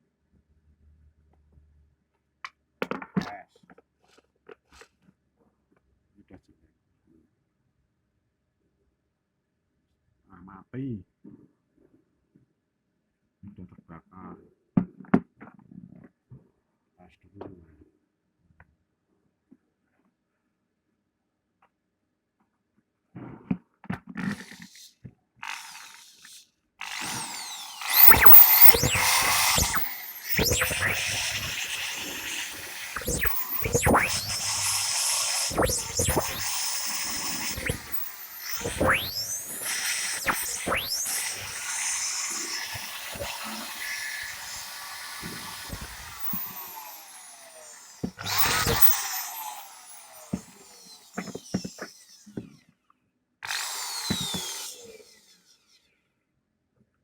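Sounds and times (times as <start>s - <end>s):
electric drill motor whining: 25.4s - 52.5s, 53.4s - 55.4s.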